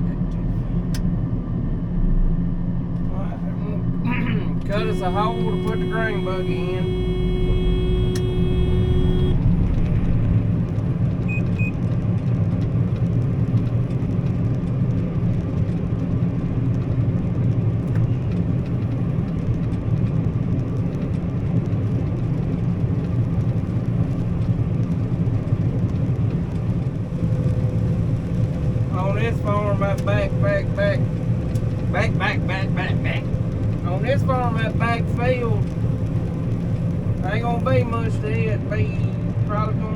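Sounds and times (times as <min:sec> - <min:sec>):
engine and machinery drone: 0:00.0 - 0:39.9
pitched tone: 0:03.8 - 0:10.7.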